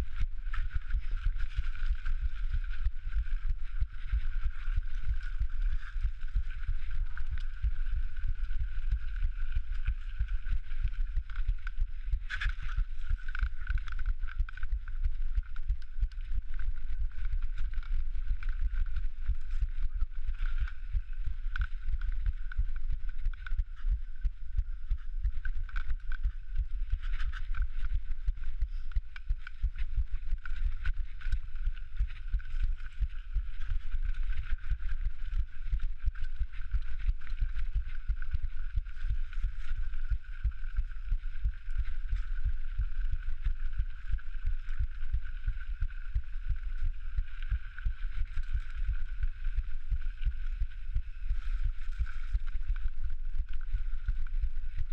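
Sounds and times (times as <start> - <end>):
heartbeat thumps: 0.0 - 54.9
low rumble: 0.0 - 54.9.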